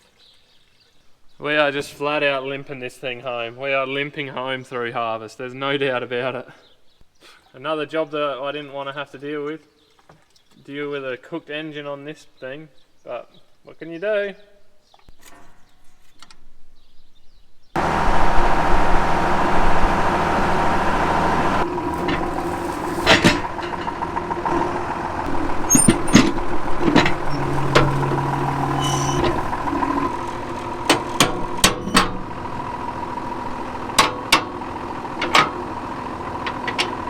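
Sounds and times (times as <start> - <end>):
tractor diesel engine running: 17.8 - 37.0
knocks and rattles: 19.0 - 37.0.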